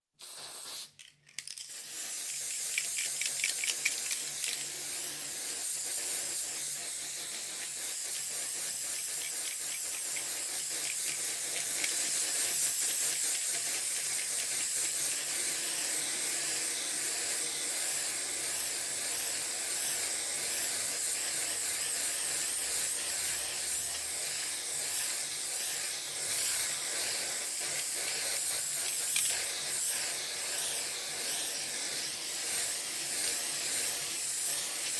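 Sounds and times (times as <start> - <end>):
spray paint can hissing: 0.1 - 34.9.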